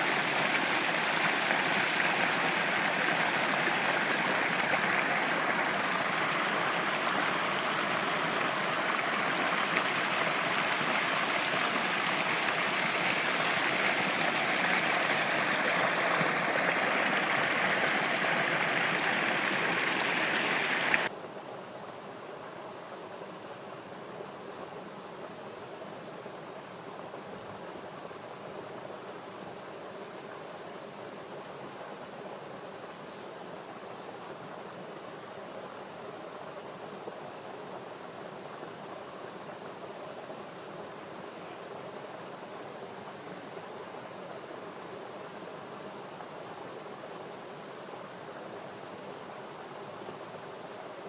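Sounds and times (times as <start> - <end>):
river water rushing: 0.0 - 21.1
faint hiss: 0.0 - 51.0.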